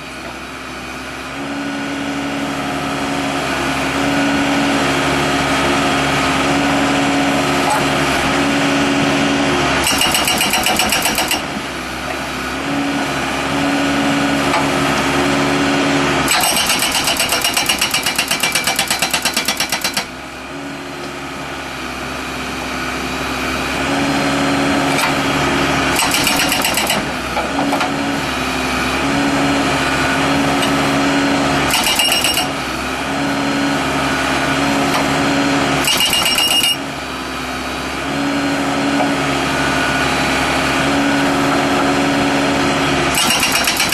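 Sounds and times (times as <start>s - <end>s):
diesel engine running: 0.0s - 43.9s
hydraulic hammer breaking concrete: 9.8s - 11.6s, 16.3s - 20.1s, 25.9s - 28.0s, 31.6s - 32.6s, 35.8s - 36.8s, 43.1s - 43.9s.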